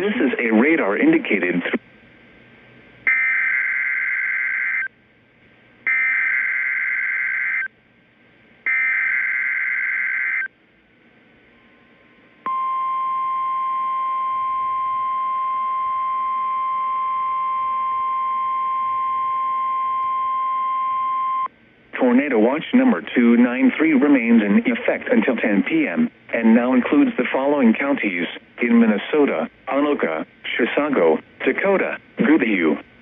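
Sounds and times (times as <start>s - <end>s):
steady alarm tone: 3.1s - 4.9s, 5.9s - 7.7s, 8.7s - 10.5s, 12.5s - 21.5s.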